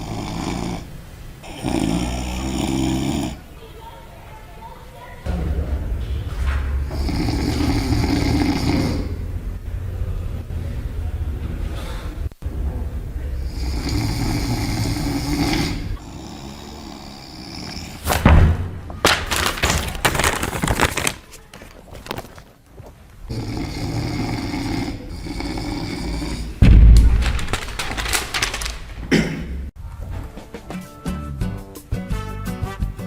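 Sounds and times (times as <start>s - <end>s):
man snoring loudly: 0.0s - 3.4s, 6.9s - 9.2s, 13.4s - 18.0s, 23.3s - 26.6s.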